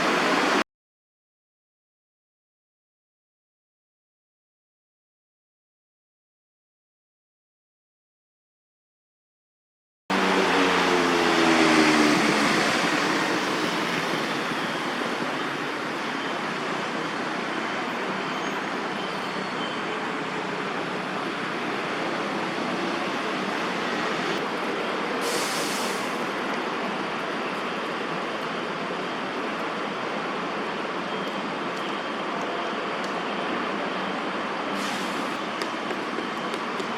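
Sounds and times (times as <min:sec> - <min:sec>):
city traffic hum: 0:00.0 - 0:00.6, 0:10.1 - 0:36.9.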